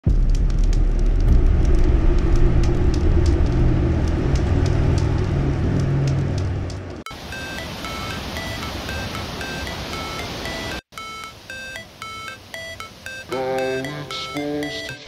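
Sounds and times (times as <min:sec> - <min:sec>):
waterfall rushing with deep rumble: 0:00.8 - 0:10.8.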